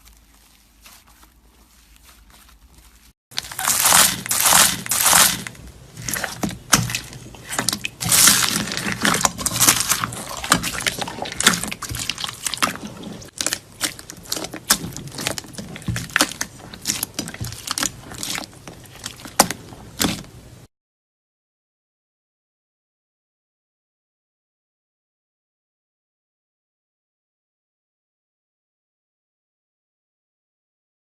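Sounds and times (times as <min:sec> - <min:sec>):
slime squelching: 0:00.0 - 0:20.7.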